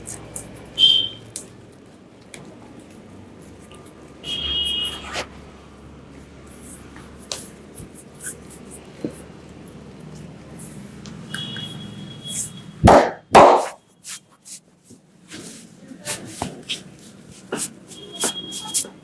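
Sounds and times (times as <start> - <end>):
loud hand smacks: 12.9 - 13.8
hands rubbing skin and hair: 13.6 - 14.7, 15.3 - 19.0.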